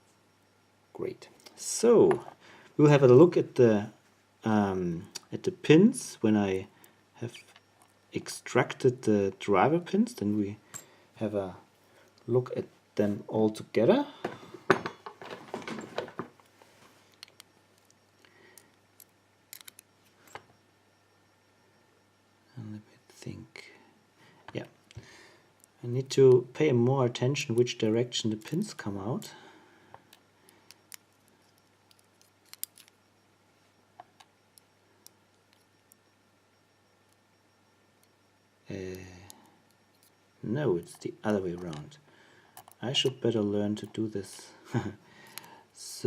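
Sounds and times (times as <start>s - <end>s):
small metallic clicks from lock parts: 18.6s - 19.9s, 30.0s - 33.0s, 42.5s - 43.2s
lock metal clicks and rattles: 31.9s - 33.0s.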